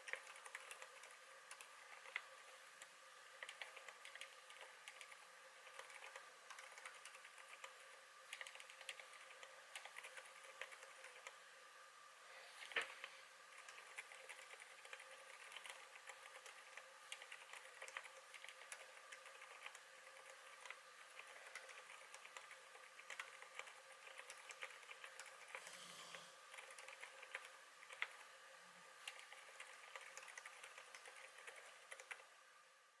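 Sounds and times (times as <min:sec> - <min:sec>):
muted keyboard keystrokes: 0:00.0 - 0:11.4, 0:13.6 - 0:25.6, 0:26.5 - 0:28.2, 0:29.0 - 0:32.3.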